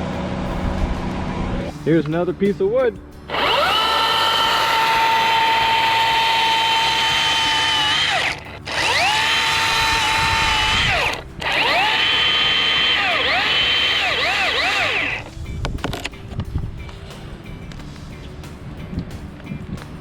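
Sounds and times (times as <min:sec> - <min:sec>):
electric chainsaw whining: 0:03.3 - 0:15.3.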